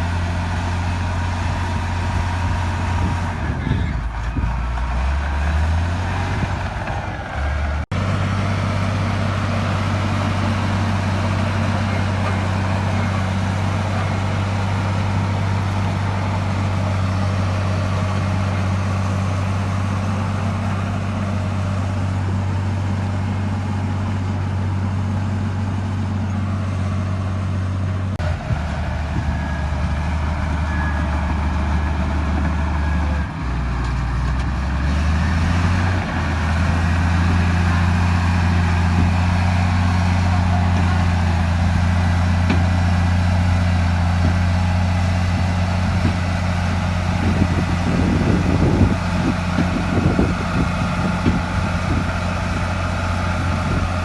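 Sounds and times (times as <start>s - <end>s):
diesel machinery engine drone: 0.0s - 54.0s.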